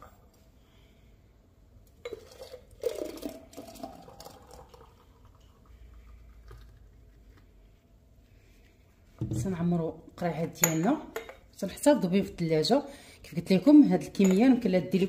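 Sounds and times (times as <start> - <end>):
glassware clinking: 10.5 - 11.4, 14.2 - 14.8.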